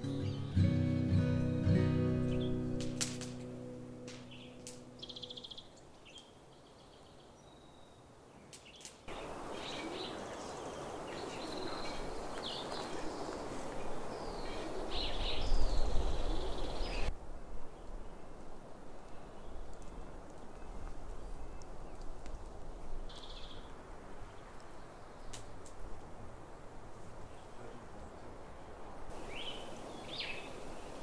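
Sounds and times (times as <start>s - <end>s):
birds chirping and calling: 0.0s - 5.7s.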